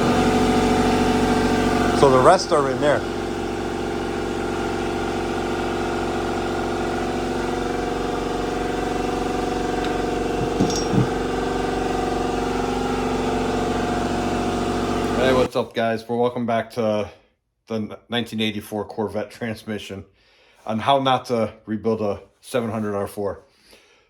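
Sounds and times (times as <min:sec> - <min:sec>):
machine droning hum: 0:00.0 - 0:12.6.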